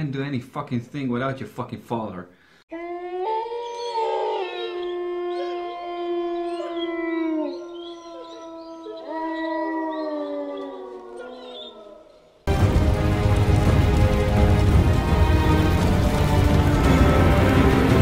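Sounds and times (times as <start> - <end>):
wolves howling: 2.7 - 12.4.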